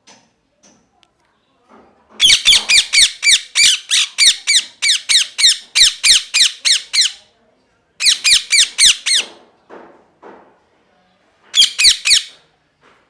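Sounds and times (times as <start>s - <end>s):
parrot shrill calls: 2.2s - 7.2s, 8.0s - 9.3s, 11.6s - 12.4s.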